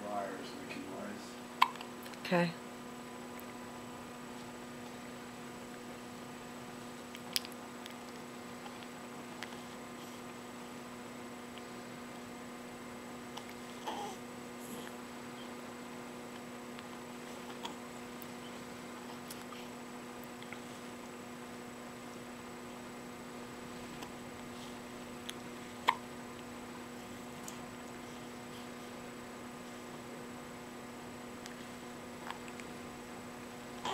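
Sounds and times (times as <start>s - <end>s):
electrical hum: 0.0s - 33.9s
sudden hiccups in hum: 1.6s - 1.9s, 25.8s - 26.1s.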